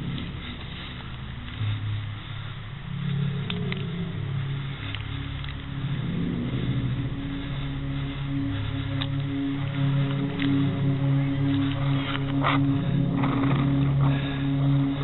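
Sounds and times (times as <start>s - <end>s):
low sustained background music: 0.0s - 15.0s
faint sharp clicks: 3.4s - 4.1s.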